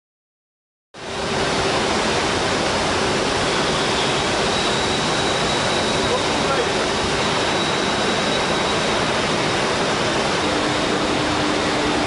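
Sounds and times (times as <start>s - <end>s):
industrial machinery roar: 1.0s - 12.0s
faint high whine: 3.5s - 9.4s, 10.1s - 12.0s.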